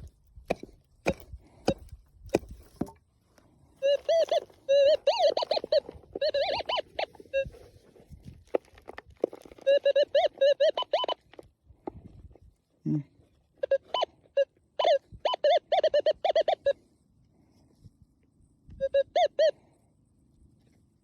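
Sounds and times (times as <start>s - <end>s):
metal detector warbling beeps: 3.8s - 7.8s, 9.4s - 11.3s, 13.6s - 16.9s, 18.7s - 19.6s.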